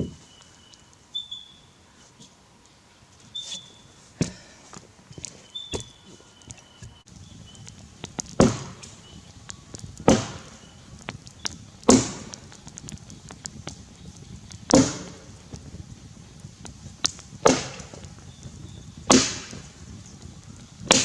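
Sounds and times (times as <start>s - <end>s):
axe chopping into log: 17.4s - 18.0s, 19.1s - 19.6s.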